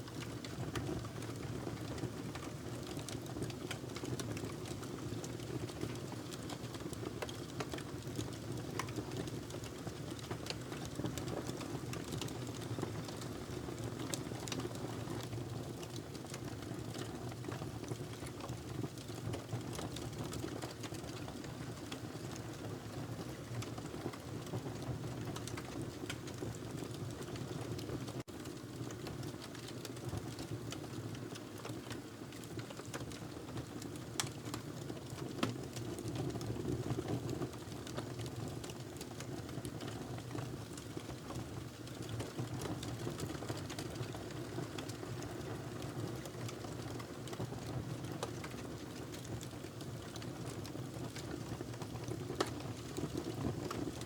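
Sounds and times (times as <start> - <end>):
wood fire crackling: 37.8 - 54.0.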